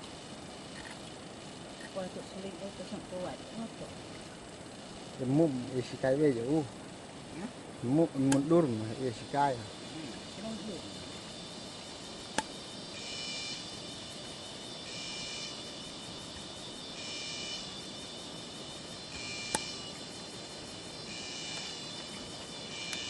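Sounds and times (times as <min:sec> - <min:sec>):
insect buzzing trill: 0:00.0 - 0:23.0
sharp clicks: 0:08.2 - 0:08.5, 0:12.3 - 0:12.5, 0:19.1 - 0:20.1.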